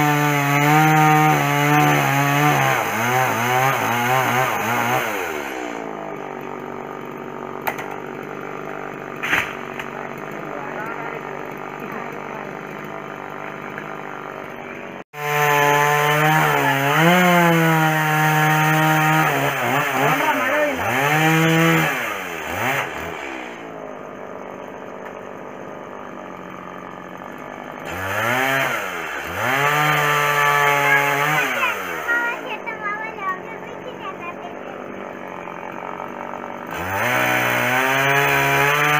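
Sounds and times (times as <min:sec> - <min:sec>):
chainsaw engine revving: 0:00.0 - 0:38.9.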